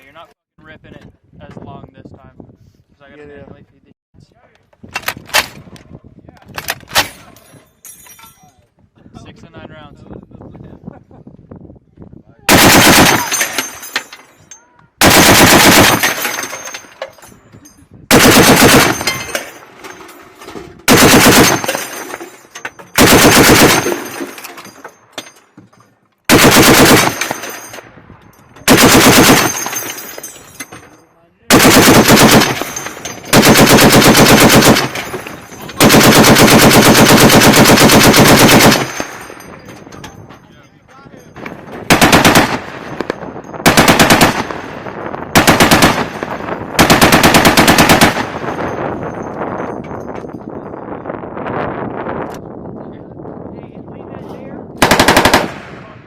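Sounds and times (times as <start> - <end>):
machine gun firing bursts: 12.5 - 13.7, 15.0 - 16.4, 18.1 - 19.3, 20.9 - 21.9, 23.0 - 24.2, 26.3 - 27.6, 28.6 - 29.8, 31.5 - 35.2, 35.8 - 39.2, 41.9 - 42.8, 43.6 - 44.7, 45.4 - 48.4, 54.8 - 55.8.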